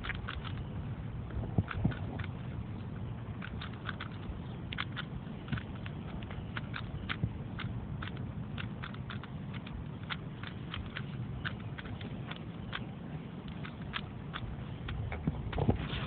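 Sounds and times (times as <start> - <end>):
puzzle cube clicking: 0.0 - 0.7, 3.4 - 12.9, 13.5 - 15.6
steady low rumble: 0.0 - 16.0.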